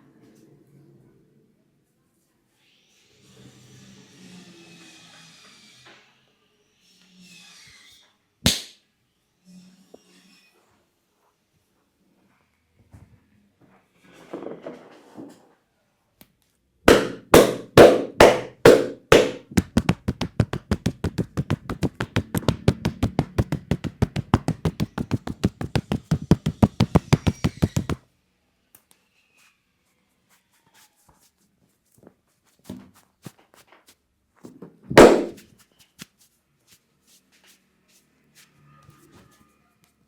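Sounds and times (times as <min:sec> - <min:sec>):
hands slapping in massage: 0:08.5 - 0:08.8, 0:16.9 - 0:28.0, 0:35.0 - 0:35.4
fast light hand taps: 0:16.9 - 0:28.0, 0:35.0 - 0:35.4.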